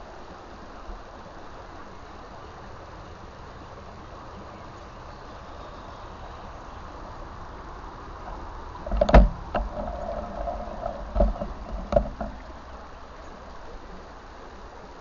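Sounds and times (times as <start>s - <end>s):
stream water running: 0.0s - 15.0s
close splashes and knocks: 8.8s - 12.8s.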